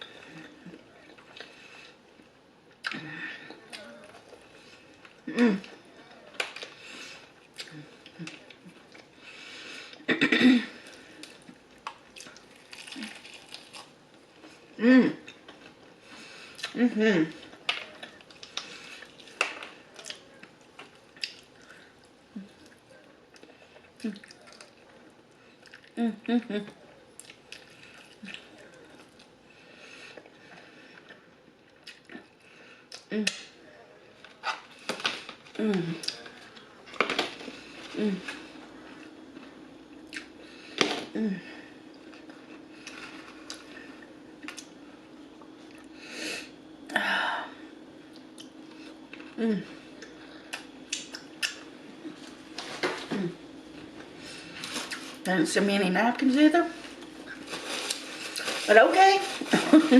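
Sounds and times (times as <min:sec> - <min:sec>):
crunching fried chicken: 0:11.2 - 0:14.0
low hum of mouth: 0:45.7 - 0:54.7.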